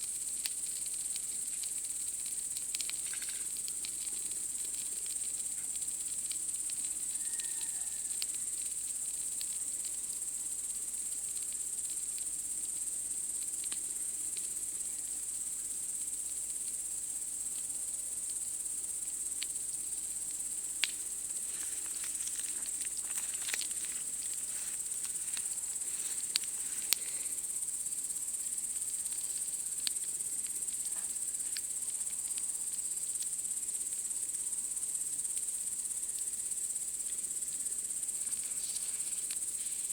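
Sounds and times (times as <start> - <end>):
campfire crackling: 0.0 - 39.9
night insects chirring: 0.0 - 39.9.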